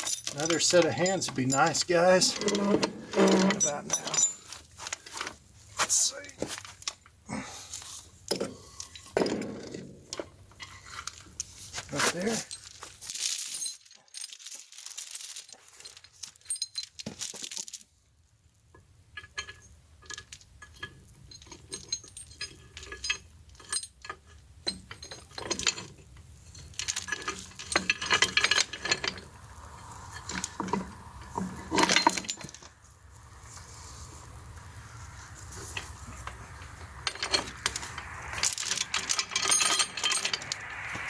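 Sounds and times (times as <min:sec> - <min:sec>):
steel parts clinking: 0:00.0 - 0:05.2, 0:35.6 - 0:41.0.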